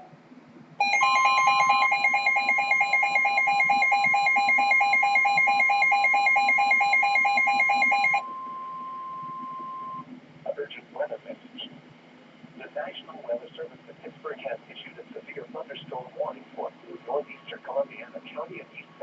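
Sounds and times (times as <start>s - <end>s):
steady high alert tone: 0.8s - 8.6s
rapid pulsing alarm beep: 0.8s - 10.1s.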